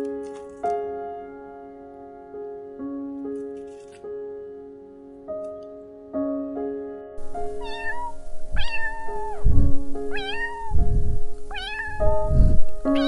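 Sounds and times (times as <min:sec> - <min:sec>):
low rumbling thuds: 0:07.2 - 0:13.0
cat meowing: 0:07.3 - 0:13.0.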